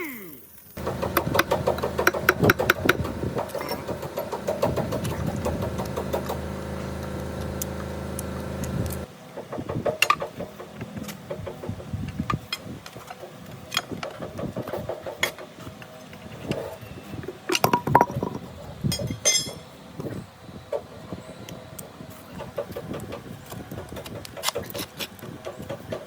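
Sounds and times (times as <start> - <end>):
engine idling: 0.8 - 9.1
metallic knocks and clatter: 0.8 - 10.7.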